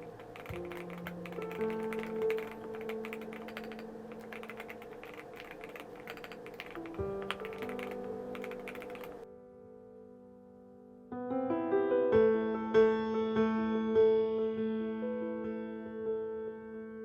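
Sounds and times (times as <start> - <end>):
mechanical keyboard key clacks: 0.0 - 9.2.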